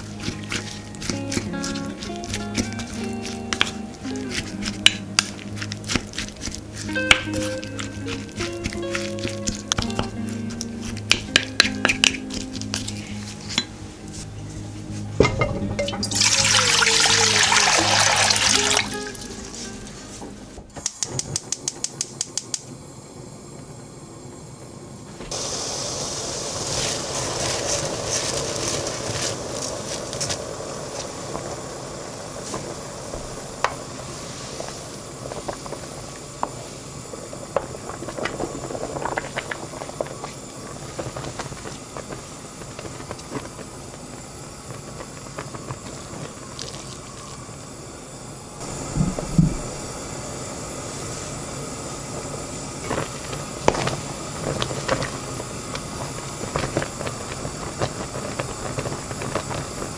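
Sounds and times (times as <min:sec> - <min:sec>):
gas stove igniter clicking: 0:00.0 - 0:13.8, 0:20.2 - 0:24.0
gas burner hiss: 0:00.0 - 0:59.9.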